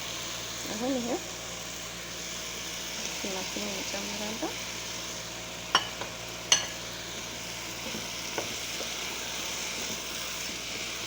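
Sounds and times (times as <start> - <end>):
food sizzling in a pan: 0.0 - 11.0
spoon clinking against pan: 5.7 - 6.8.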